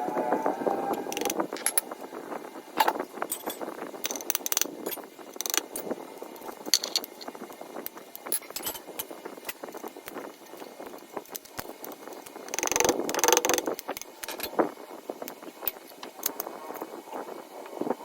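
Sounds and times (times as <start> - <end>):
metal parts and tools clinking: 1.1 - 1.9, 2.8 - 7.4, 8.2 - 9.7, 12.5 - 14.6.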